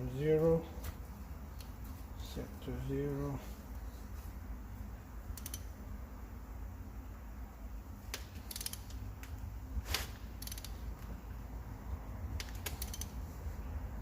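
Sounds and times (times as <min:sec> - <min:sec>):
ratchet wrench clicking: 0:05.3 - 0:05.7, 0:08.1 - 0:09.4, 0:10.4 - 0:10.8, 0:12.4 - 0:13.2.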